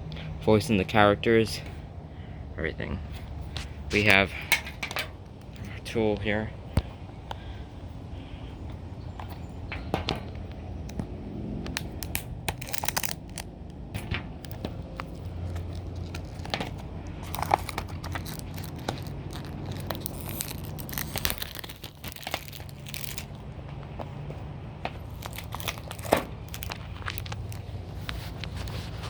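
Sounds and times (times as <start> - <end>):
plastic wrap crinkling and tearing: 11.8 - 13.5, 14.4 - 23.4, 25.0 - 29.0.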